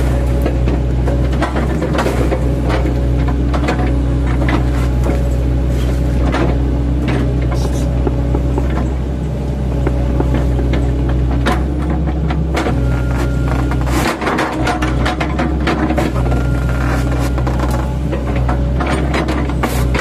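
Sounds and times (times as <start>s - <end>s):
excavator diesel engine: 0.0s - 20.0s
bucket chopping trunks: 6.1s - 20.0s.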